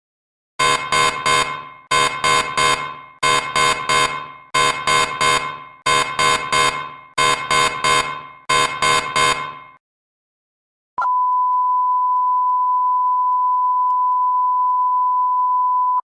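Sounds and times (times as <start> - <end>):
ringing alarm strikes: 0.6 - 9.8.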